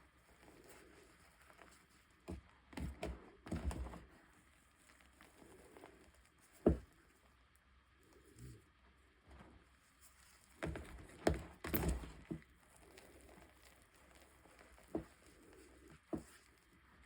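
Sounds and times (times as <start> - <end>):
chalk cracking and crunching: 12.3 - 17.0.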